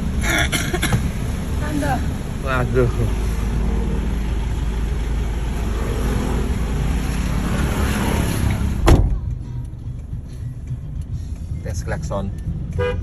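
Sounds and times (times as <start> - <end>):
vehicle engine rumble: 0.0 - 13.0.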